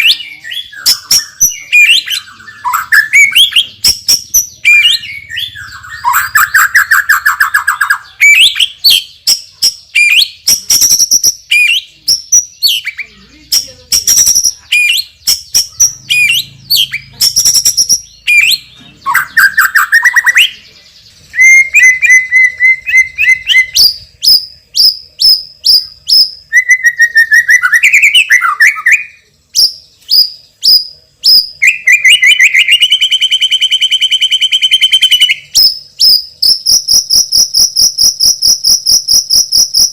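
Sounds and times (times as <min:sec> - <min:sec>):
buzzy rattling bird trill: 0:00.0 - 0:20.6, 0:29.6 - 0:39.9
songbird singing whistles and trills: 0:00.0 - 0:39.9.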